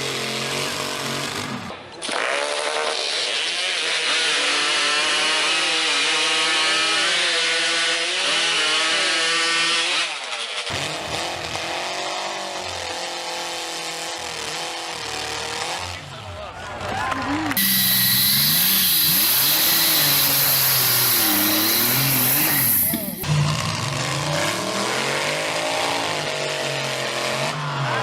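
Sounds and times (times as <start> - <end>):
chainsaw cutting log: 17.6 - 23.3
quieter engine-driven saw: 17.6 - 23.3.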